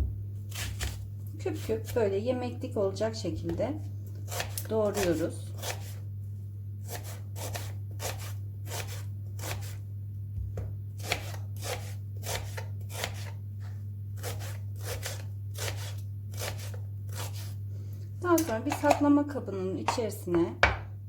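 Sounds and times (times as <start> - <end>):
knife chopping on cutting board: 0.0 - 1.0, 4.3 - 6.0, 6.9 - 9.8, 10.5 - 13.4, 14.2 - 17.6, 20.6 - 20.9
steady low hum: 0.0 - 21.0.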